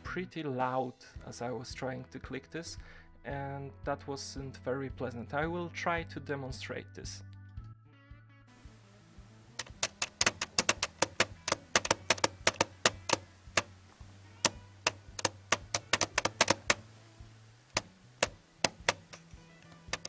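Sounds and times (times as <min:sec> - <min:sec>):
touchpad clicking: 0:09.6 - 0:13.8, 0:14.4 - 0:16.8, 0:17.7 - 0:20.0.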